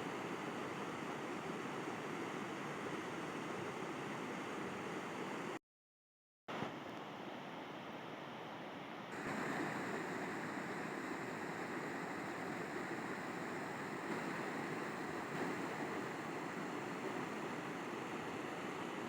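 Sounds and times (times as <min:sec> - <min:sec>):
river water rushing: 0:09.2 - 0:19.0.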